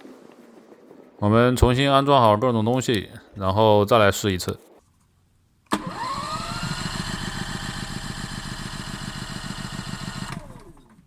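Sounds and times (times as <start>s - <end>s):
generator engine running: 5.7s - 11.0s.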